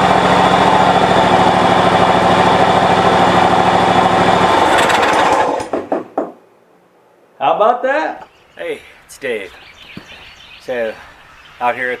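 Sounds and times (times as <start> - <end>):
lawn tractor engine running: 0.0 - 6.2.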